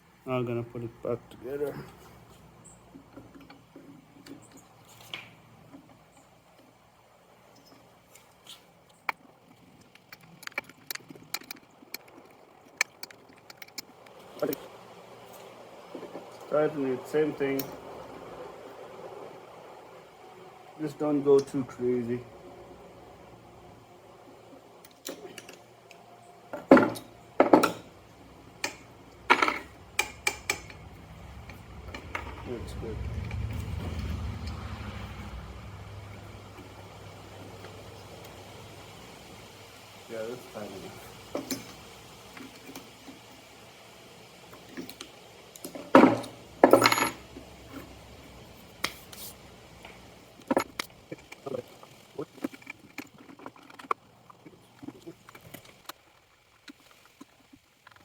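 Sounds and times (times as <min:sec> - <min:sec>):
hand tools clicking and knocking: 0:09.1 - 0:14.7, 0:24.8 - 0:27.9, 0:28.6 - 0:34.7, 0:44.6 - 0:47.9, 0:49.9 - 0:56.0.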